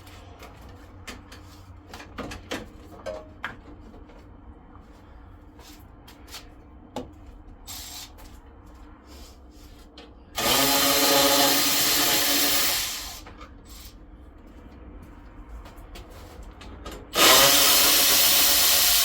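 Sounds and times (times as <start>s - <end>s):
handheld power drill running: 10.4s - 13.2s, 17.1s - 19.0s.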